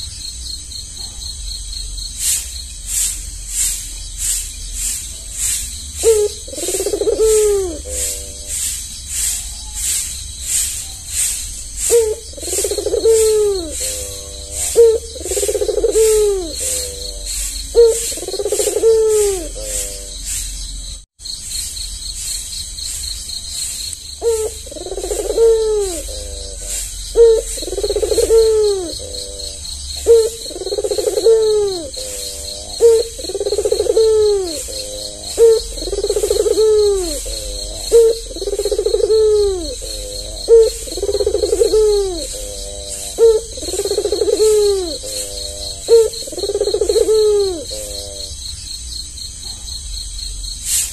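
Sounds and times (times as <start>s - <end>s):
dove cooing: 5.4s - 9.5s, 11.2s - 20.4s, 24.2s - 48.4s.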